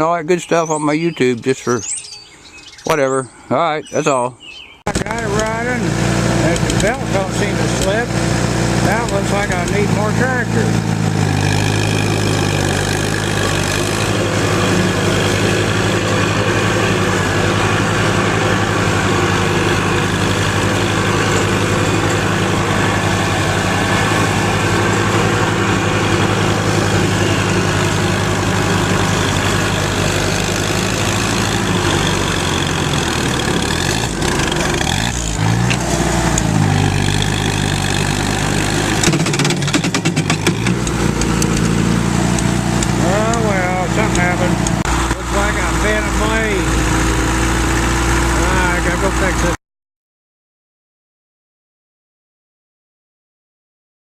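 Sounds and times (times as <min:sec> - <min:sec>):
tractor engine running: 0:00.0 - 0:49.6
sharp knocks: 0:38.9 - 0:41.8.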